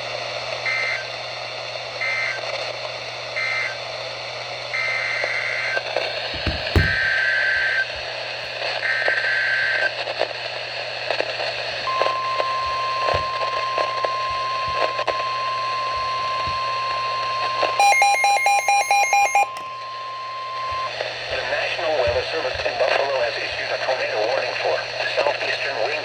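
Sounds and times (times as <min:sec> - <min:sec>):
radio hiss: 0:00.0 - 0:26.0
steady warning alarm tone: 0:11.9 - 0:22.7.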